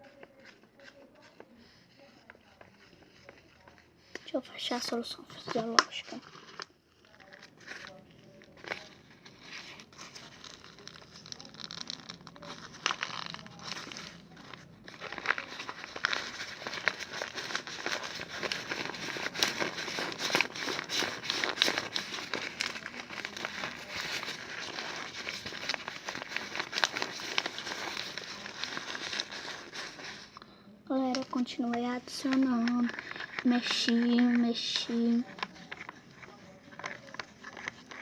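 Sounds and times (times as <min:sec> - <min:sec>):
slime being stirred wet crackling: 0:00.0 - 0:30.3.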